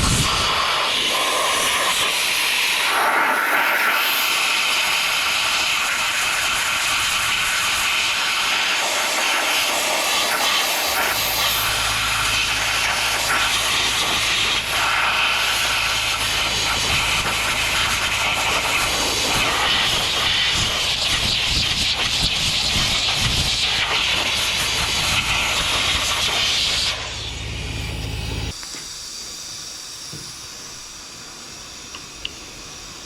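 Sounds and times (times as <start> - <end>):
aerosol spray hissing: 0.0 - 27.2, 28.5 - 33.0
low hum: 23.8 - 28.6.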